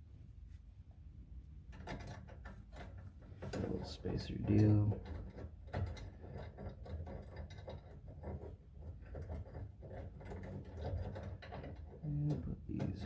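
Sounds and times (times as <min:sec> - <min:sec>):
metal parts clicking and knocking: 0:01.7 - 0:13.0.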